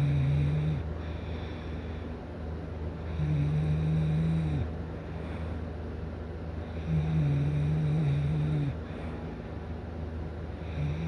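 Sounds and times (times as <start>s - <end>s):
breathing: 0.7s - 2.3s, 4.9s - 5.7s, 8.7s - 9.6s.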